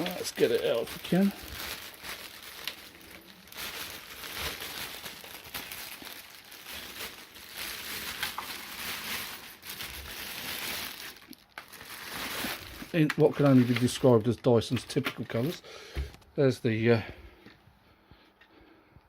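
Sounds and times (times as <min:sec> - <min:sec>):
plastic bag crinkling: 0:00.0 - 0:16.2.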